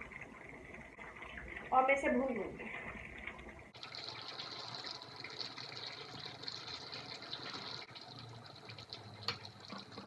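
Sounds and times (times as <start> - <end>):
food sizzling in oil: 3.8 - 10.0.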